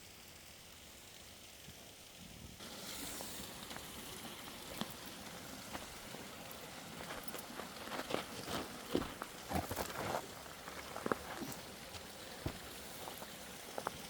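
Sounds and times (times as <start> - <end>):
creek rushing: 2.6 - 14.0
footsteps crunching on trail: 3.6 - 14.0.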